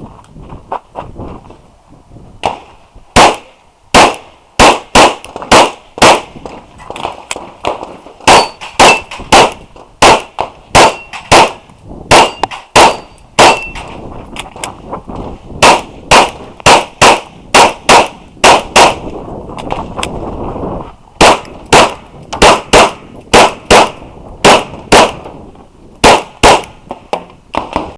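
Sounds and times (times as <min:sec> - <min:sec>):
pistol shots: 0:02.4 - 0:13.9, 0:15.6 - 0:19.1, 0:21.2 - 0:25.3, 0:26.0 - 0:27.9
metallic ring of steel targets: 0:08.2 - 0:09.2, 0:10.9 - 0:11.3, 0:12.2 - 0:13.9.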